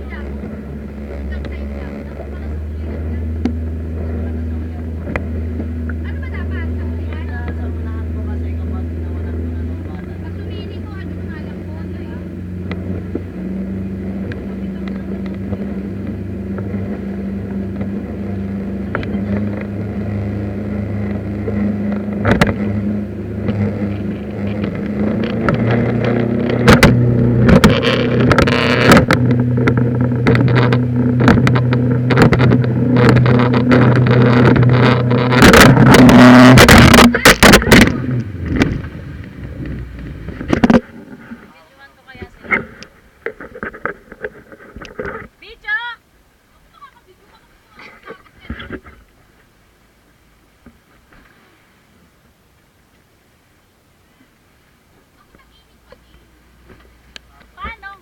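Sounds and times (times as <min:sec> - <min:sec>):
motorboat engine running: 0:00.0 - 0:58.0
loud noisy bursts: 0:18.9 - 0:40.7.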